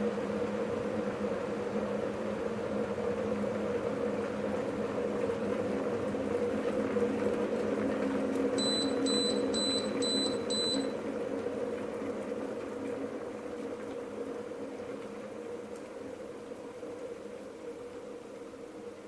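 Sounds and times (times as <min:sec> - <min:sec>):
kettle water rumbling: 0:00.0 - 0:19.0
short high beeps: 0:08.6 - 0:10.9.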